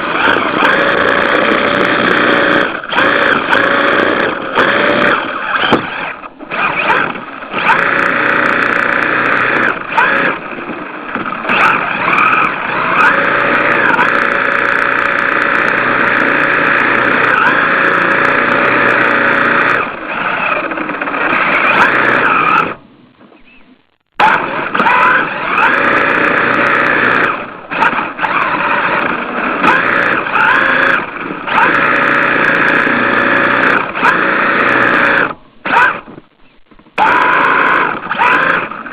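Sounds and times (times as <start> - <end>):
rc car motor revving: 0.0 - 22.8, 24.2 - 36.0, 37.0 - 38.9
tyres squealing: 11.4 - 20.6, 23.4 - 29.0, 29.6 - 38.9.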